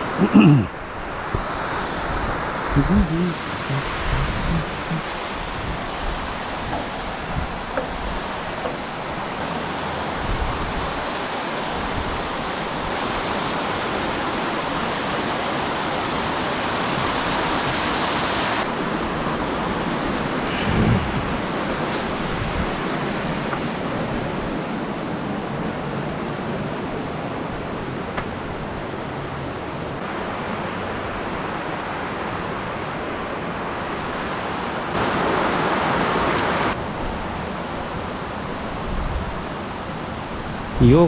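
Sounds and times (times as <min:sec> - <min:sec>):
waterfall rushing: 0:00.0 - 0:41.0.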